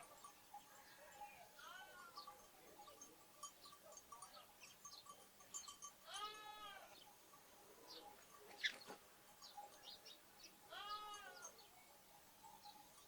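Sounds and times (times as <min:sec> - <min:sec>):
small birds chirping: 0:00.0 - 0:13.0
lamb bleating: 0:06.1 - 0:07.0, 0:10.7 - 0:11.5.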